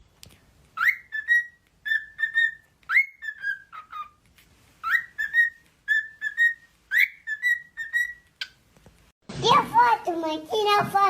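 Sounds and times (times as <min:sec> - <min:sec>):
cockatiel whistling: 0:00.8 - 0:04.2, 0:04.8 - 0:08.6.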